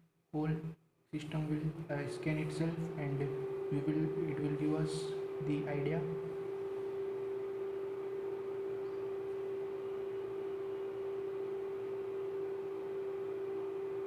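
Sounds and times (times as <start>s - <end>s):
cooling fan hum: 0.4s - 14.0s.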